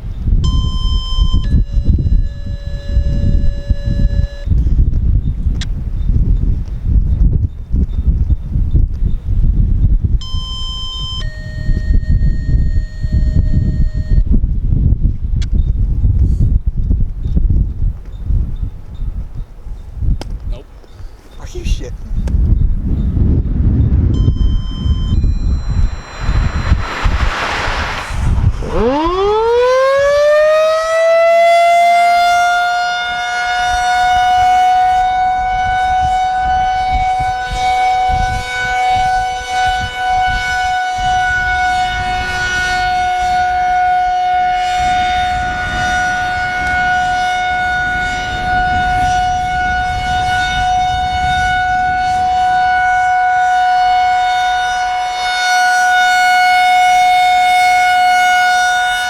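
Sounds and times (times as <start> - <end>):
warning siren winding up: 0.5 - 4.6, 10.2 - 14.3, 24.0 - 27.1, 28.6 - 59.0.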